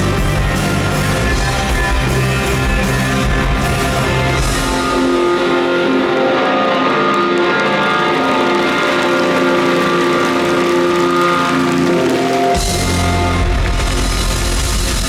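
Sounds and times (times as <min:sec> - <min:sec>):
live rock band playing: 0:07.1 - 0:15.0.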